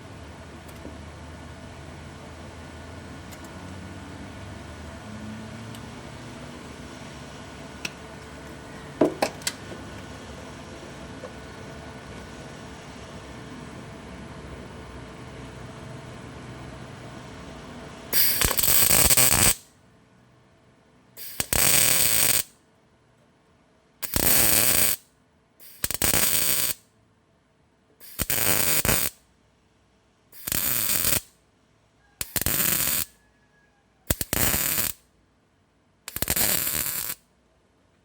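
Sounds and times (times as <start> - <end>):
mig welder crackling: 18.1 - 19.6, 21.2 - 22.5, 24.0 - 25.0, 25.6 - 26.8, 28.0 - 29.2, 30.4 - 31.4, 32.2 - 33.2, 34.1 - 35.0, 36.1 - 37.2.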